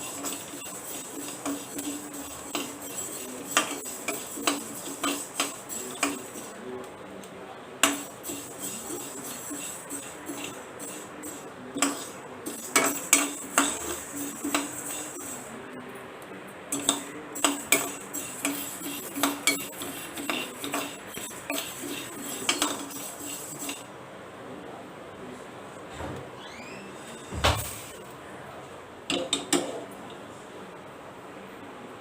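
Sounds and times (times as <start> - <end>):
metal ladle scraping a pan: 0.0 - 6.5, 7.8 - 15.5, 16.7 - 23.9.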